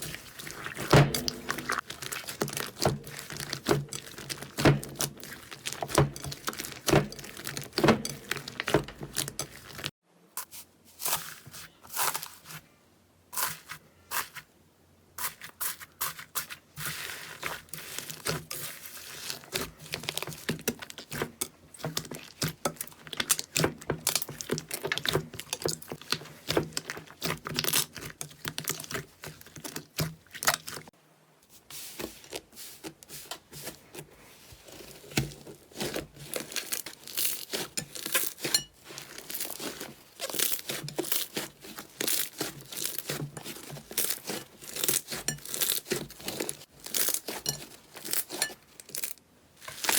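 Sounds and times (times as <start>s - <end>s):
slime crackling and popping: 0.0s - 9.9s, 17.4s - 30.9s, 35.1s - 49.9s.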